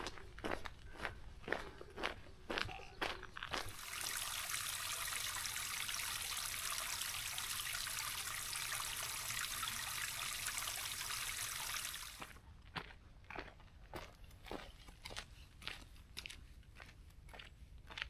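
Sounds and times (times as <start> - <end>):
running water rushing: 3.7 - 12.3.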